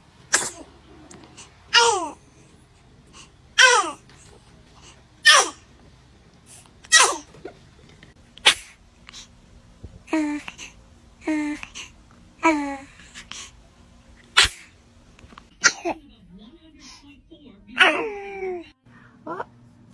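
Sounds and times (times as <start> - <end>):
baby sneezing: 0.3 - 2.3, 3.2 - 4.0, 4.8 - 5.7, 6.5 - 7.4, 8.4 - 9.3, 10.1 - 13.6, 14.2 - 16.0, 17.8 - 18.6.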